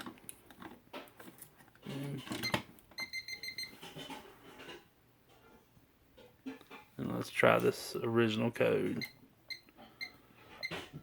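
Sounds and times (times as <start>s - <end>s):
keypad lock beeps: 2.4s - 3.7s.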